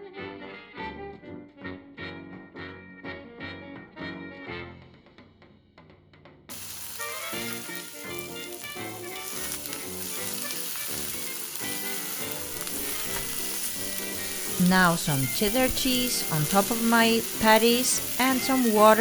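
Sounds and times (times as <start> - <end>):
burger patties sizzling in a pan: 6.5 - 19.0.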